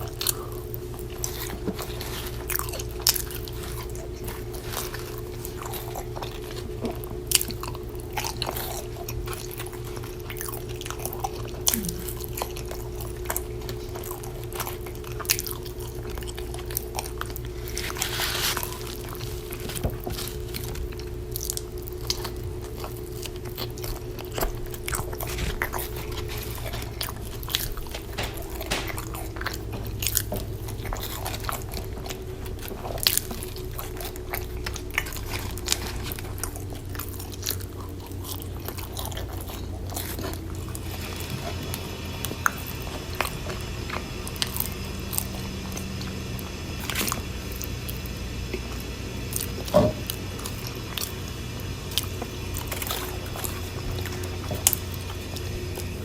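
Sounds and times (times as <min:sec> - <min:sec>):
wet mouth sounds: 0:00.0 - 0:43.5
chewing and biting food: 0:00.0 - 0:56.0
steady low hum: 0:00.0 - 0:56.0.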